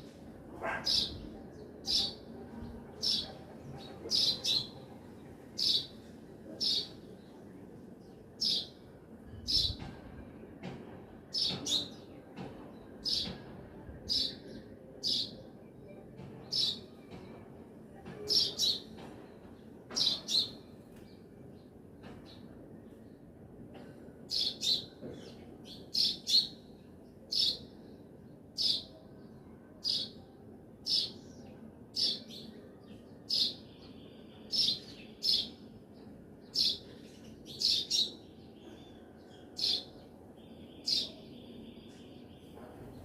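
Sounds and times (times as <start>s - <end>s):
faint background noise: 0.0s - 43.0s
bird chirping: 36.4s - 42.7s.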